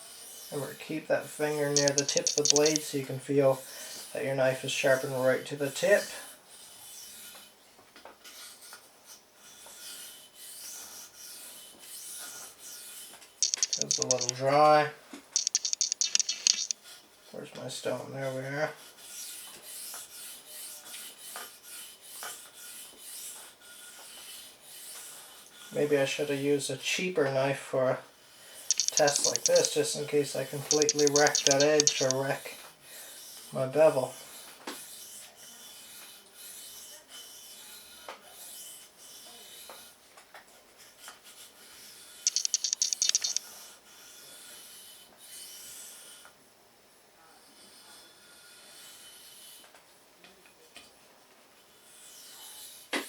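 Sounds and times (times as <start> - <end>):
rapid sharp clicking: 1.8 - 2.9, 13.4 - 14.3, 15.4 - 16.8, 28.7 - 29.8, 30.7 - 32.2, 42.3 - 43.4.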